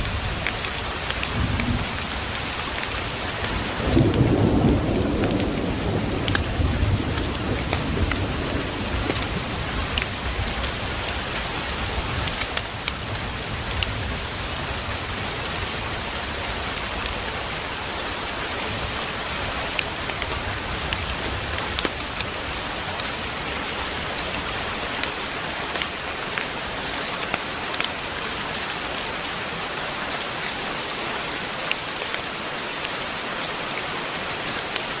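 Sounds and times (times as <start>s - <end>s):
heavy rain hiss: 0.0s - 35.0s
thunder rumbling: 1.2s - 12.4s.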